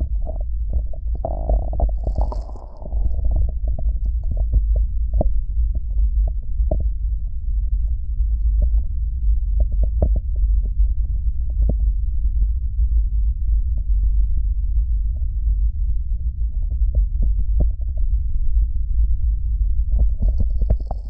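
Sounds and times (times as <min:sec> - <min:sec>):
fingers rubbing microphone: 0:01.0 - 0:04.4, 0:20.1 - 0:21.0.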